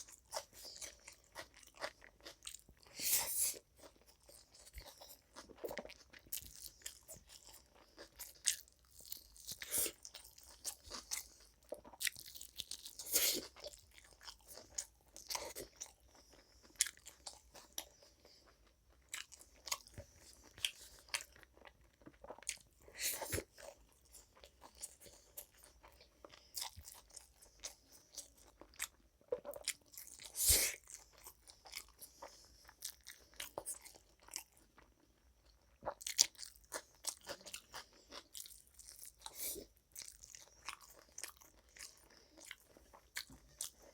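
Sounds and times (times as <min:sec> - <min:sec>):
person crunching and chewing: 0:00.0 - 0:43.9.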